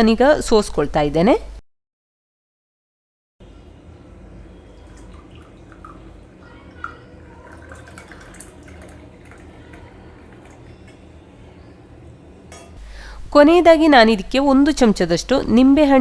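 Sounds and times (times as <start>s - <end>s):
tea trickling through strainer: 3.5s - 11.8s.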